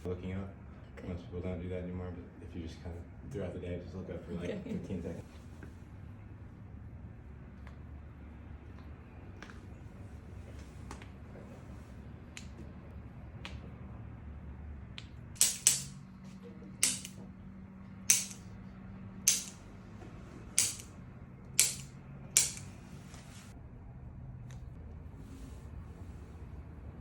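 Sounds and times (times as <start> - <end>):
sharp ringing clicks: 16.8 - 17.2, 18.1 - 18.5, 19.3 - 19.6, 20.6 - 20.9, 21.6 - 22.7.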